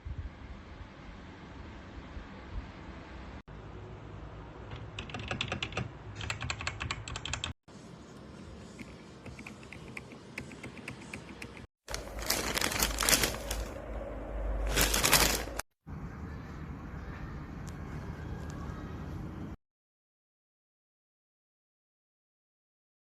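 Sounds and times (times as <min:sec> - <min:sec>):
mechanical keyboard typing: 0:04.7 - 0:07.6.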